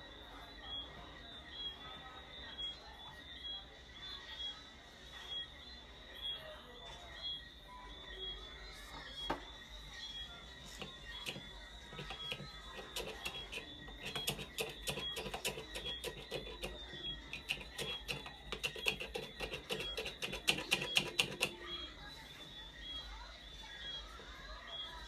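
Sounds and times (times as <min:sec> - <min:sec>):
hard clicks and taps: 0:10.7 - 0:21.8.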